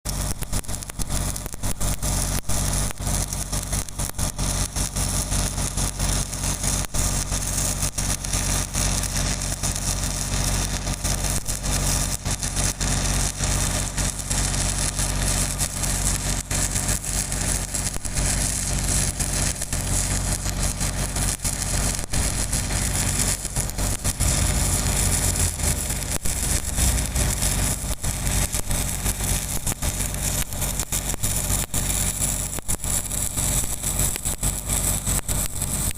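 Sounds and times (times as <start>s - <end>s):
arc welding crackling hiss: 0.1s - 35.9s
engine humming: 23.5s - 28.6s.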